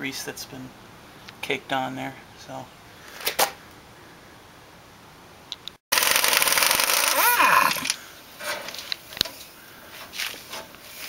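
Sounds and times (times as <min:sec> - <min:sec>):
power tool running: 0:05.9 - 0:07.3.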